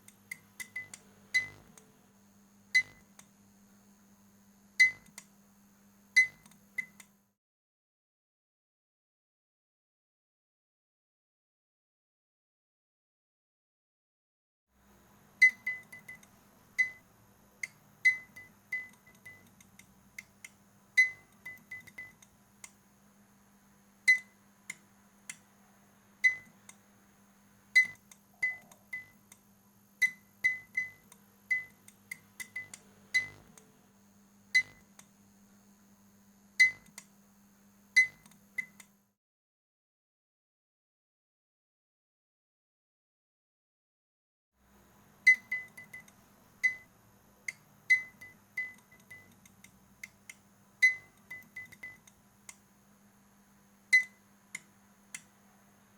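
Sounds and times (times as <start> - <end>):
fluorescent lamp clicking: 0.0 - 1.9, 30.0 - 33.7, 54.0 - 55.4
low steady hum: 0.0 - 7.1, 14.8 - 39.0.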